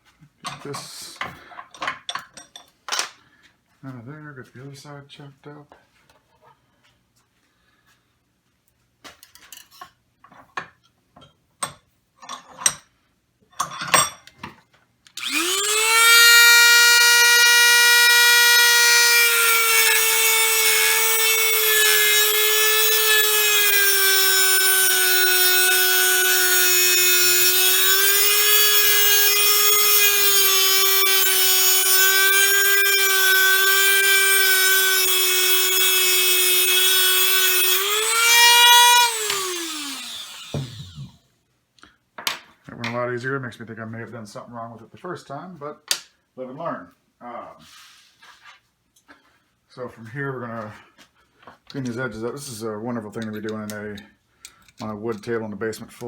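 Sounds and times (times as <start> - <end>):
rotary tool whining: 15.2 - 41.2.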